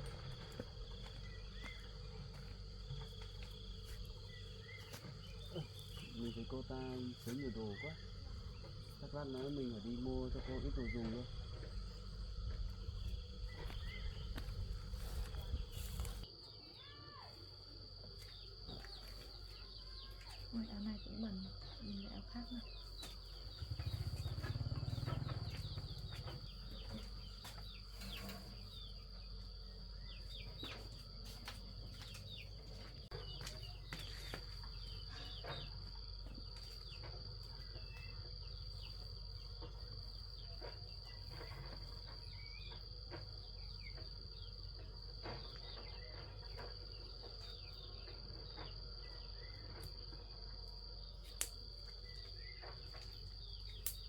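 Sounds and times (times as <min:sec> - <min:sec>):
insects chirring: 0:00.0 - 0:54.0
low rumble: 0:08.0 - 0:16.3.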